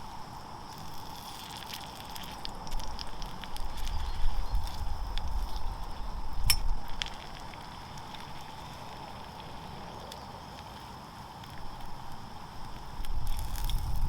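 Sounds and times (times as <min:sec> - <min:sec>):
sharp click: 0:06.5 - 0:06.7.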